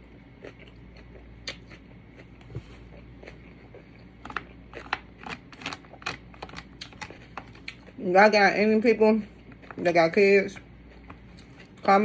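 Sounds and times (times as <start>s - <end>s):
crunchy salad chewing: 0.0s - 8.0s, 10.5s - 12.0s.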